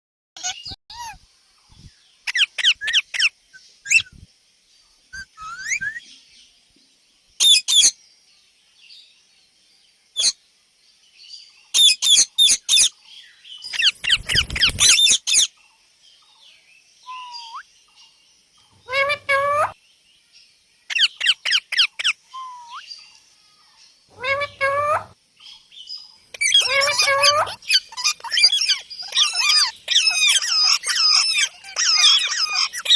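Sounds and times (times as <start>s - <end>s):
parakeets screeching: 0.4s - 1.2s, 5.2s - 6.0s, 13.6s - 15.5s, 17.1s - 17.6s, 18.8s - 19.8s, 20.9s - 22.8s, 24.1s - 25.2s, 26.3s - 32.9s.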